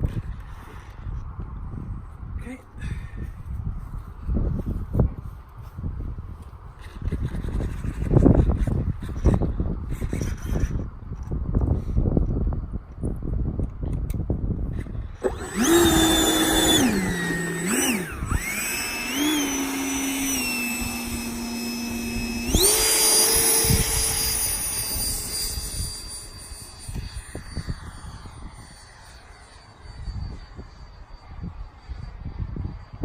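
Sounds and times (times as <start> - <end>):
wind rumble on microphone: 0.0 - 33.0
electric ducted fan whining: 15.2 - 33.0.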